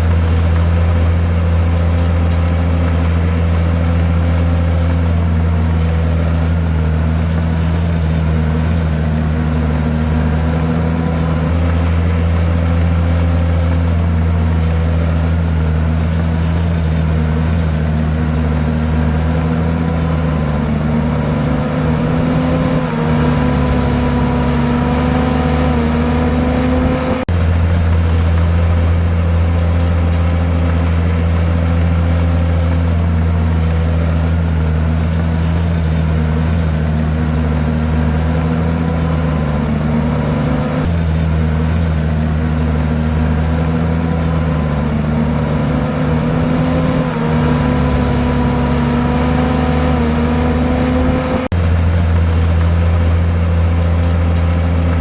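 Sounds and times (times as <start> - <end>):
bulldozer diesel engine under load: 0.0 - 55.0.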